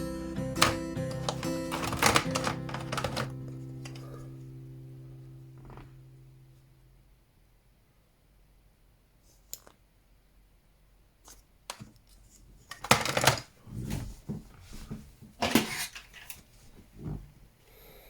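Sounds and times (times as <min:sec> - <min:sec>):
toys clattering and rustling: 0:00.6 - 0:04.0, 0:11.7 - 0:16.5
toys clicking and knocking: 0:00.6 - 0:04.0.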